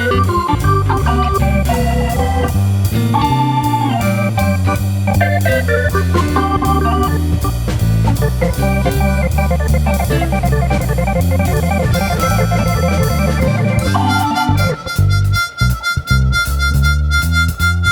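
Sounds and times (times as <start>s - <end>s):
bass line: 0.0s - 17.9s
keyboard chords: 0.0s - 17.9s
sparse beat: 0.0s - 17.9s
held high note: 11.6s - 17.9s.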